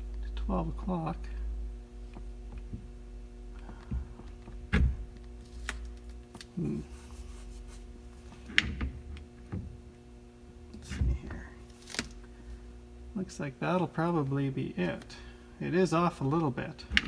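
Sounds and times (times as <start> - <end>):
steering wheel knocks and clunks: 3.6 - 5.2.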